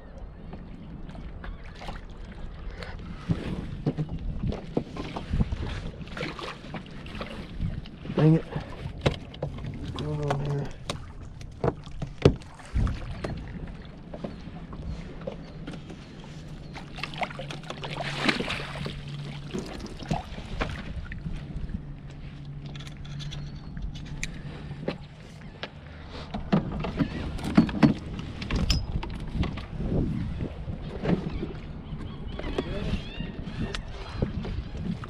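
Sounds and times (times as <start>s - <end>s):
knocks and thumps on plastic kayak: 3.2s - 7.7s, 8.7s - 15.9s, 26.3s - 30.1s.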